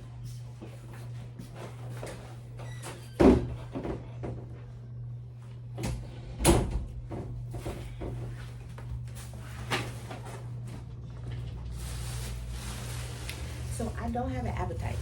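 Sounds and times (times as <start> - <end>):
steady low hum: 3.3 - 15.0.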